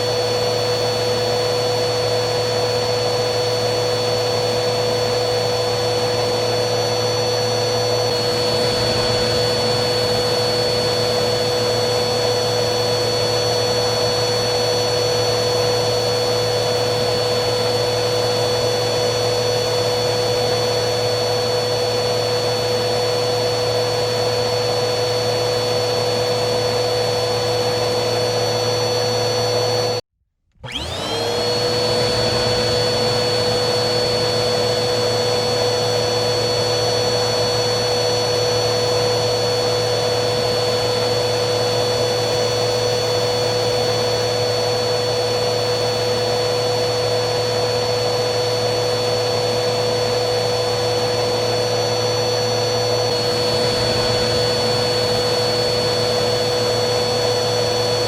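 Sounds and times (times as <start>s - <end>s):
vacuum cleaner motor whining: 0.0s - 58.0s.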